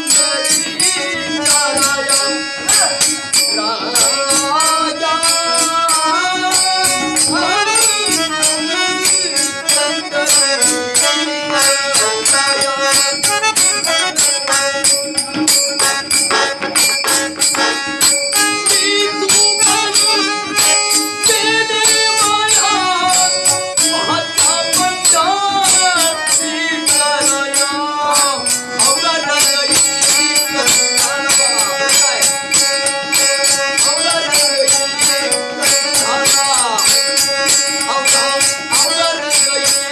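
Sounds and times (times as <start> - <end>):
fast steady percussion: 0.0 - 39.9
jingling cymbals: 0.0 - 39.9
person singing devotional song: 0.0 - 39.9.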